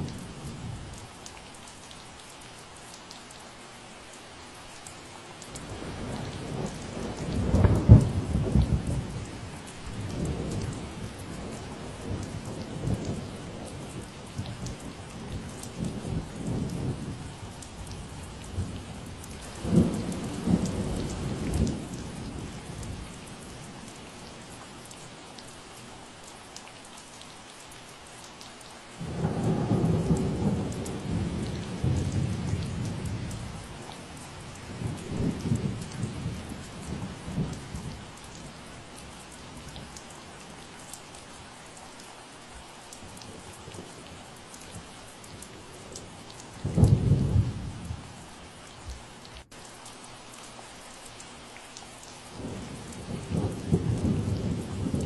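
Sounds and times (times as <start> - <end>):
steady rain falling: 0.0 - 55.0
low rolls of thunder: 5.6 - 23.7, 29.0 - 38.6, 43.1 - 48.2, 52.3 - 55.0.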